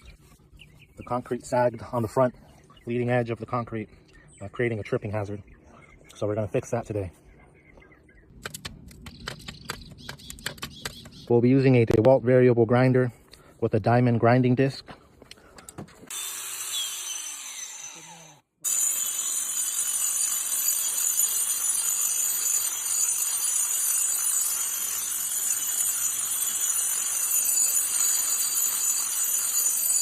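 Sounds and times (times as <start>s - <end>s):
angle grinder grinding concrete: 16.1s - 30.0s.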